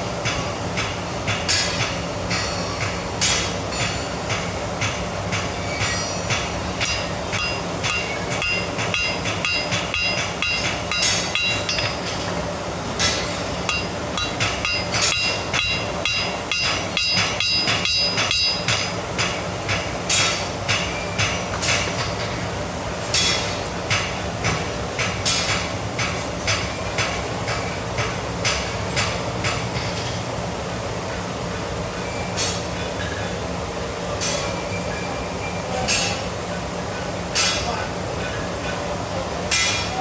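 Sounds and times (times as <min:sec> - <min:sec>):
hammer striking steel on anvil: 0:00.2 - 0:12.4, 0:13.0 - 0:22.4, 0:23.1 - 0:30.2, 0:35.9 - 0:36.2, 0:37.4 - 0:37.8, 0:39.5 - 0:40.0
anvil ringing: 0:05.7 - 0:12.2, 0:13.0 - 0:18.9.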